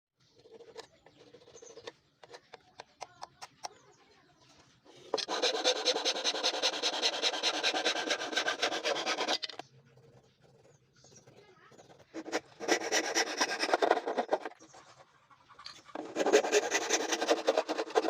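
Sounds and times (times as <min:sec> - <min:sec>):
hand tool scraping wood: 0:04.9 - 0:09.6, 0:11.1 - 0:18.0.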